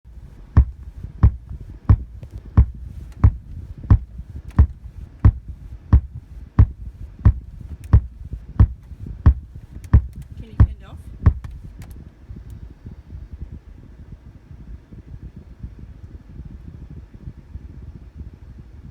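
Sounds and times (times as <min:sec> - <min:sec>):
low hum: 0:00.0 - 0:18.9
car speakers thumping: 0:00.1 - 0:11.9.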